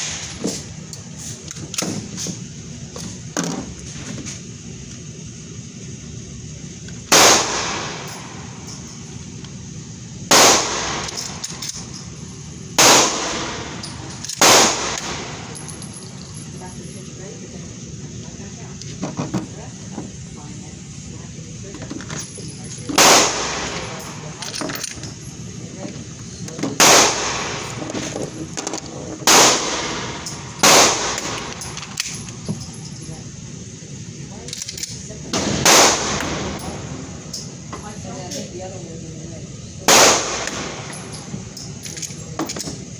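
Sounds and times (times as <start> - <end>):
pistol shots with echo: 7.1 - 8.8, 10.3 - 11.9, 12.8 - 15.9, 22.9 - 24.4, 26.8 - 28.2, 29.2 - 32.4, 35.3 - 37.3, 39.9 - 41.8.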